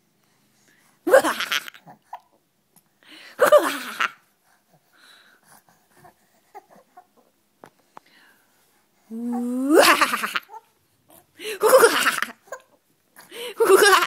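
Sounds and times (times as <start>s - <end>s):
baby laughing: 9.7s - 10.7s, 11.5s - 12.8s, 13.5s - 14.0s.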